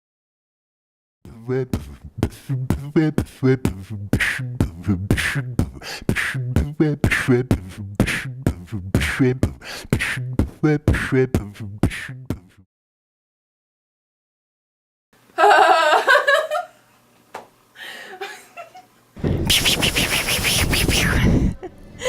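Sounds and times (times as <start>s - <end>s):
beatboxing: 1.3s - 12.7s, 19.2s - 21.6s
low bass sound: 1.5s - 12.5s.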